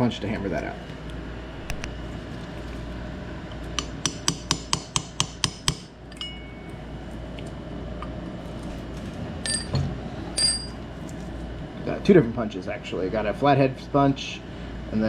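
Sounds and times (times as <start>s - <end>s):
hammer striking steel punch: 4.0s - 6.4s
light metal clink: 6.1s - 6.7s
metallic ring: 6.1s - 6.8s, 9.4s - 9.8s, 10.4s - 10.8s.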